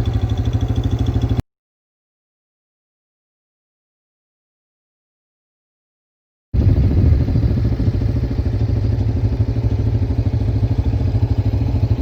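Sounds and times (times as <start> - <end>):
engine running with low pulsing: 0.0 - 1.4, 6.6 - 12.0.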